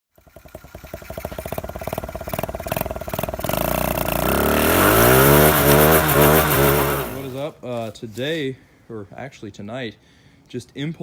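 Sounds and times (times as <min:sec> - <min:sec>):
mini bike engine revving: 0:00.1 - 0:07.5.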